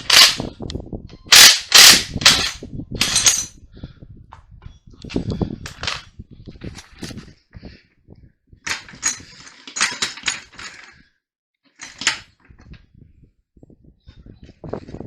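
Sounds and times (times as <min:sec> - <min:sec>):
metallic clanks of hand tools: 0:01.3 - 0:03.6, 0:08.7 - 0:11.0.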